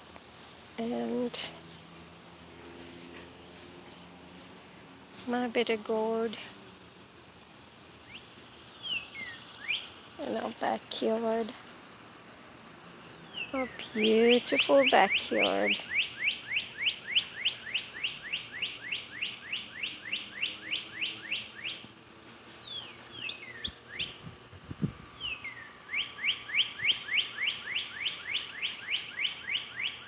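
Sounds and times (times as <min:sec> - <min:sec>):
songbird rising chirps: 0:08.0 - 0:10.2, 0:13.3 - 0:21.8, 0:22.4 - 0:30.0.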